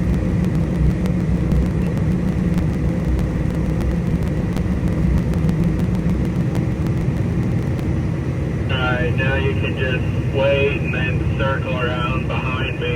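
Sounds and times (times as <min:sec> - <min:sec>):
combine harvester running: 0:06.0 - 0:12.9.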